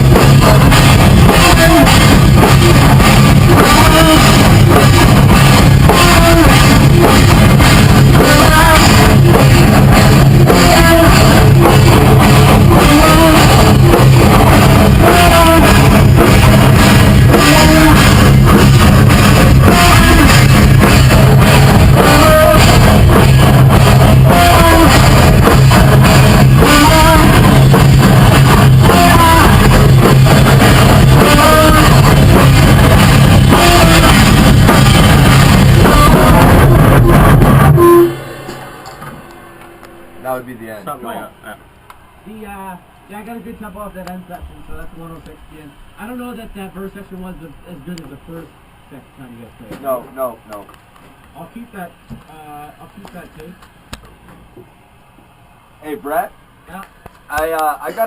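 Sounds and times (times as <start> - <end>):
electric guitar: 0.0 - 40.6
drum kit: 0.0 - 42.7, 56.7 - 58.0.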